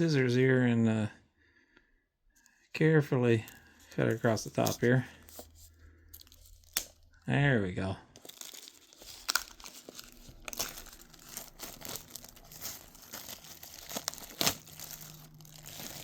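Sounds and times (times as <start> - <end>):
plastic wrap crinkling and tearing: 3.6 - 7.2, 8.2 - 16.0
plastic wrap snapping: 6.2 - 7.1, 8.2 - 16.0.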